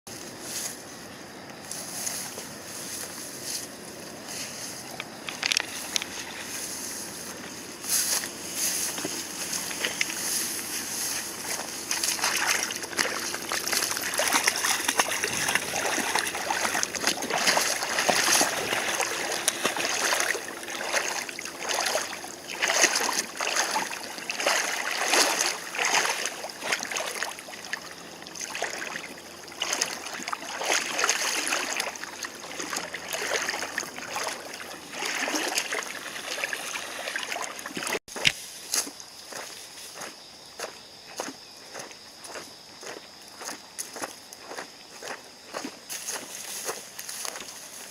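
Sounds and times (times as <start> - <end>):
splashing: 8.8 - 38.0
river rushing: 11.4 - 27.8.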